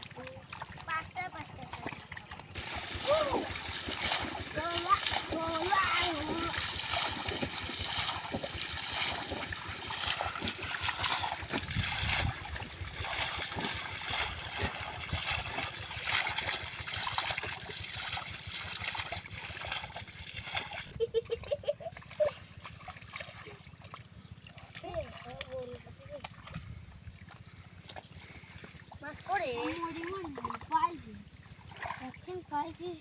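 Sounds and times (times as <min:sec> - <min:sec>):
water splashing and sloshing: 0:00.0 - 0:33.0.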